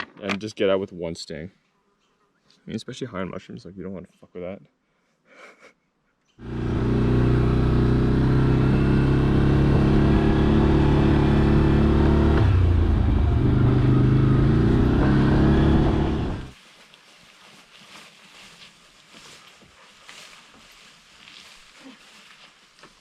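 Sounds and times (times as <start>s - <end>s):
vehicle engine running: 6.4s - 16.6s.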